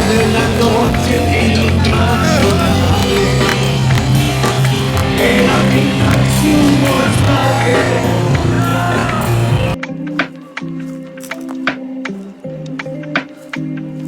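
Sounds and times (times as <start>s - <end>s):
strong bass line: 0.0s - 9.8s
rock music: 0.0s - 14.0s.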